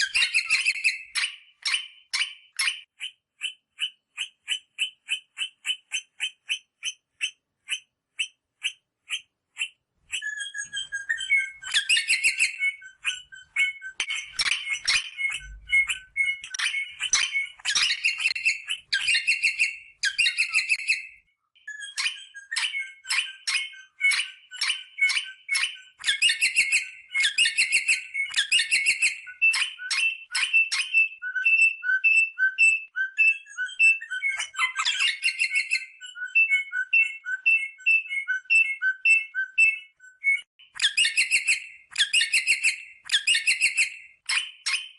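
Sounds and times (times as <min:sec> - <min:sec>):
parrots calling and squawking: 0:08.6 - 0:21.1, 0:33.6 - 0:36.8.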